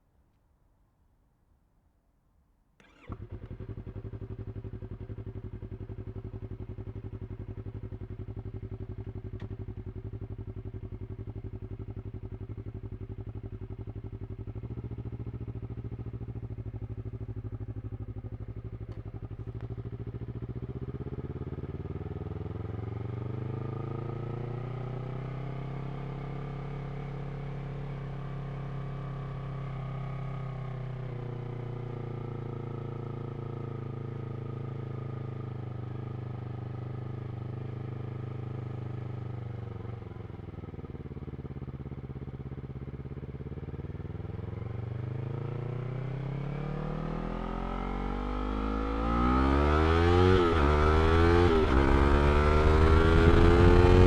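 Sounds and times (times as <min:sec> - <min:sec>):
motorcycle engine idling: 0:02.8 - 0:23.5, 0:33.0 - 0:45.6.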